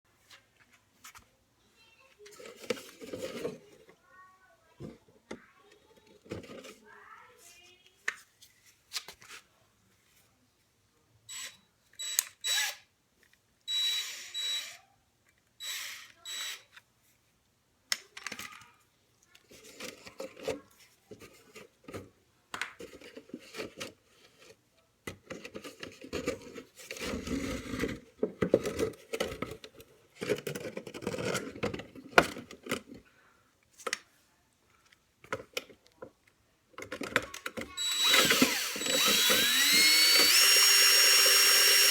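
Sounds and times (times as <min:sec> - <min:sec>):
knocking and scraping: 0:02.2 - 0:04.0, 0:22.8 - 0:33.1
electric drill whining: 0:11.3 - 0:12.8, 0:13.7 - 0:14.8, 0:15.6 - 0:16.6, 0:37.8 - 0:41.9.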